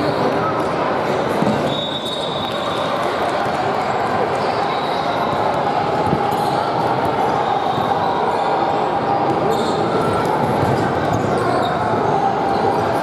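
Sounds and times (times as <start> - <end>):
crowd chatter: 0.0 - 13.0.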